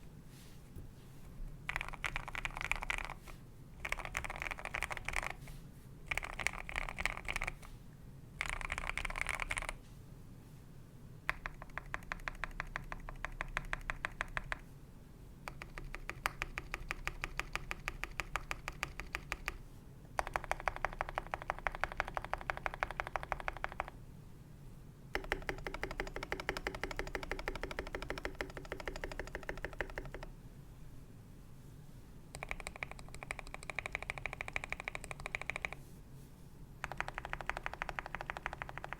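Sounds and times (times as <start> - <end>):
mechanical keyboard typing: 1.6 - 5.5, 6.1 - 7.7, 8.4 - 9.8, 11.3 - 14.7, 15.5 - 19.6, 20.2 - 24.0, 25.1 - 30.3, 32.3 - 35.8, 36.8 - 38.9.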